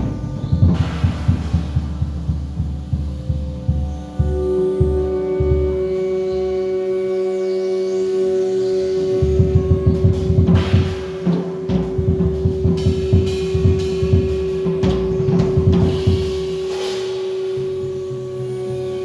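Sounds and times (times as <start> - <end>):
fast low drum beats: 0.0 - 6.0, 9.2 - 16.8.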